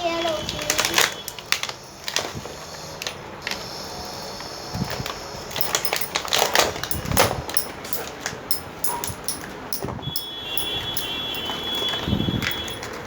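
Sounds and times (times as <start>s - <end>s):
packaging clicks and rustles: 0.2s - 3.7s.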